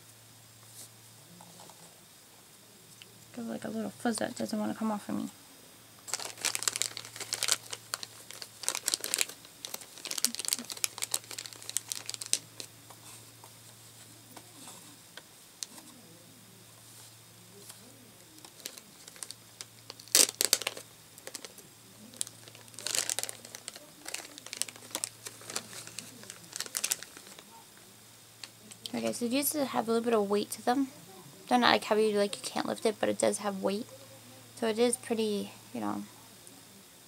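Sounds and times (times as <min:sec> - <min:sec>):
faint low hum: 0:00.0 - 0:37.0
plastic wrapping crinkling: 0:06.0 - 0:14.9, 0:17.6 - 0:27.6.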